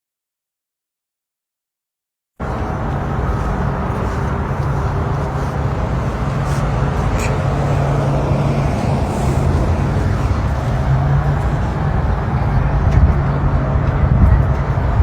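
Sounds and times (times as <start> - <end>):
car road and engine noise: 2.4 - 15.0
constant low hum: 2.4 - 15.0.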